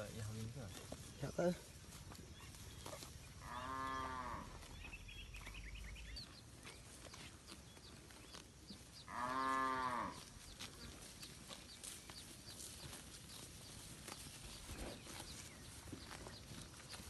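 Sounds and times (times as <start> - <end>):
cattle mooing: 3.4 - 4.6, 9.1 - 10.2.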